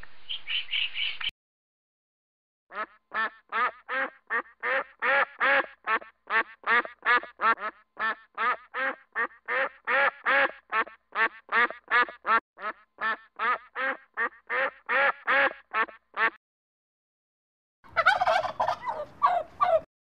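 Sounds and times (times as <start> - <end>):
duck quacking: 2.7 - 16.4, 17.9 - 19.9.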